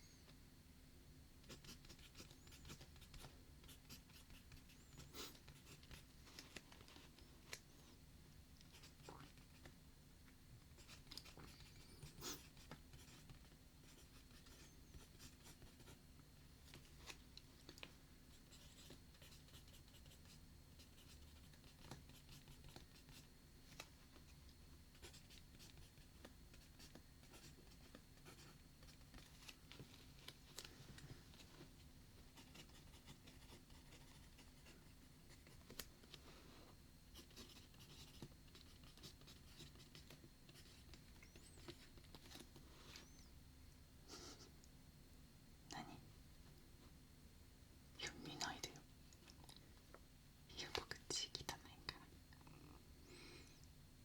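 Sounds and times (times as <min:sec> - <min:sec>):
pen scratching on paper: 0:05.5 - 0:06.0, 0:10.8 - 0:16.0.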